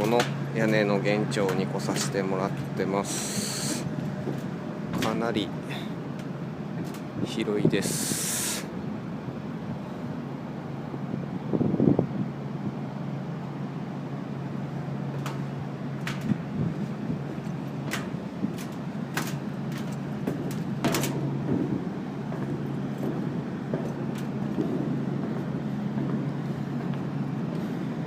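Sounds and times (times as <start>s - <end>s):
low mechanical hum: 0.0s - 28.0s
sharp clicks and knocks: 4.2s - 5.2s, 15.2s - 16.4s, 17.8s - 27.0s.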